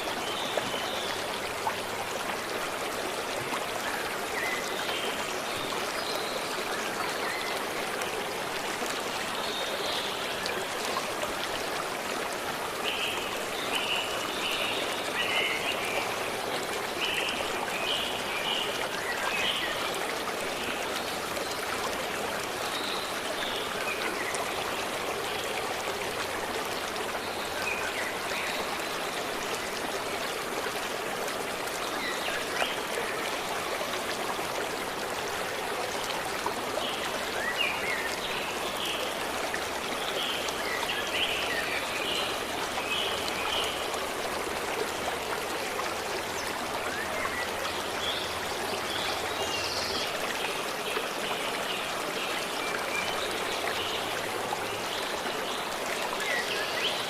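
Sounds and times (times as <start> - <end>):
forest stream running: 0.0 - 57.0.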